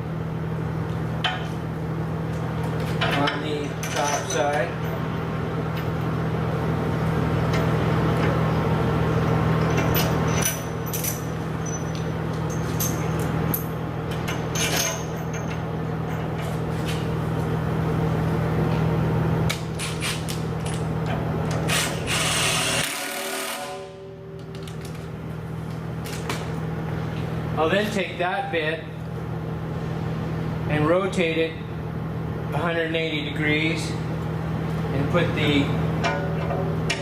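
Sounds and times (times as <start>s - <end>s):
steady machine hum: 0.0s - 37.0s
metal tools clinking: 3.0s - 5.0s, 9.6s - 16.5s.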